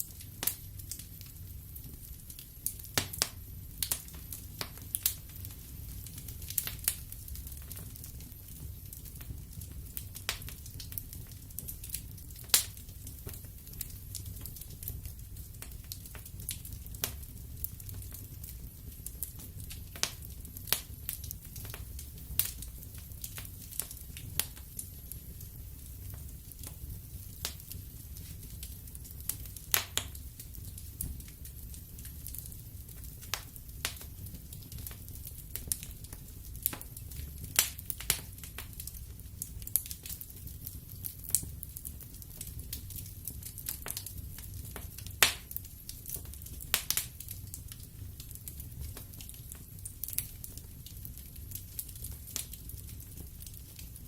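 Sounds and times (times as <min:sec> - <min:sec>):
fire flames rumbling: 0:00.0 - 0:54.0
logs crackling and popping: 0:00.0 - 0:54.0.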